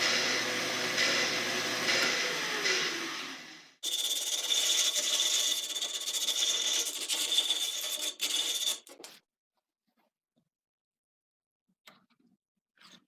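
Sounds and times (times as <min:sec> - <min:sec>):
power tool whining on wood: 0:00.0 - 0:05.3.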